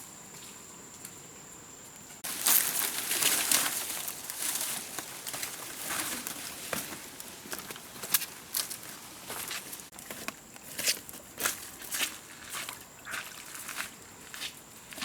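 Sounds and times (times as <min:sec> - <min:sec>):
rustling and crackling: 0:02.2 - 0:10.9.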